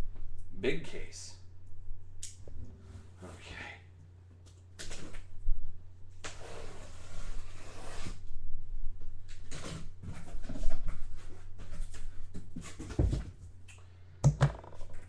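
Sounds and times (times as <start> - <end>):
steady low hum: 0.0 - 10.2.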